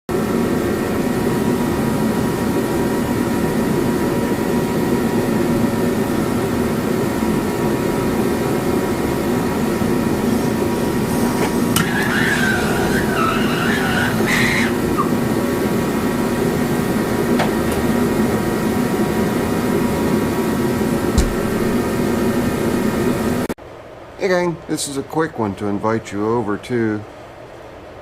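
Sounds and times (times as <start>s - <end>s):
mechanical drone: 8.2s - 23.4s.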